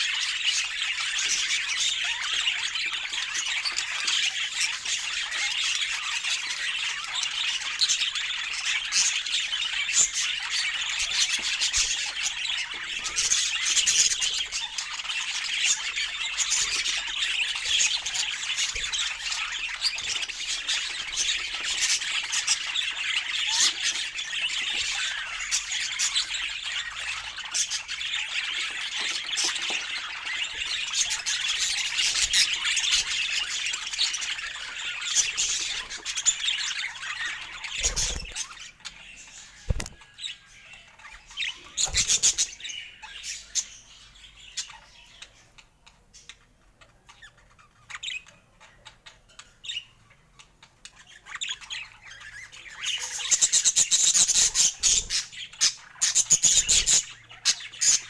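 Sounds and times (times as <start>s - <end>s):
budgerigars chattering: 0.0s - 58.0s.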